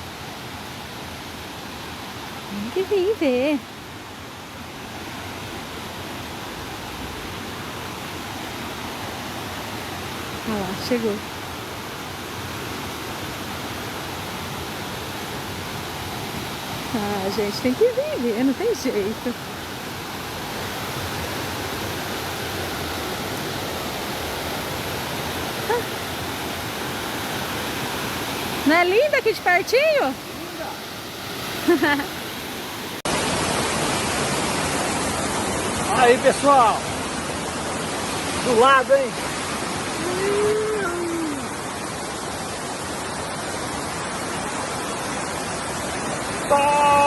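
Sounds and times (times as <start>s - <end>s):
waterfall rushing: 0.0s - 47.0s
person calling out: 40.0s - 41.5s, 46.5s - 47.0s.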